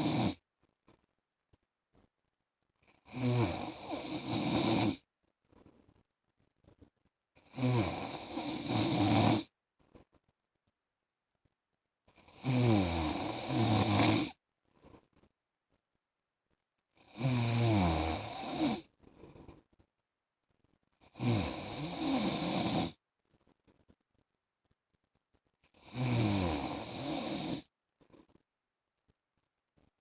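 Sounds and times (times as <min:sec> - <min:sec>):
man snoring: 0:00.0 - 0:00.4, 0:03.1 - 0:05.0, 0:07.5 - 0:09.5, 0:12.3 - 0:14.4, 0:17.1 - 0:18.8, 0:21.2 - 0:23.0, 0:25.8 - 0:27.7.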